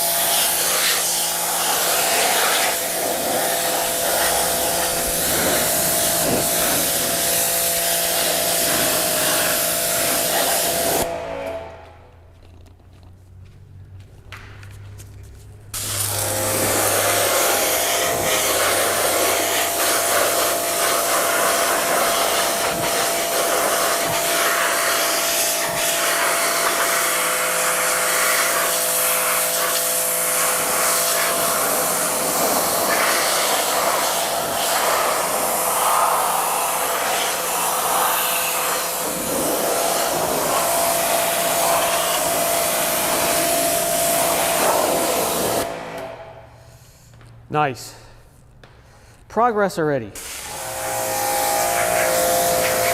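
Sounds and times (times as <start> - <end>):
pressure washer spraying water: 0.0 - 11.1, 15.8 - 46.2, 50.2 - 52.9.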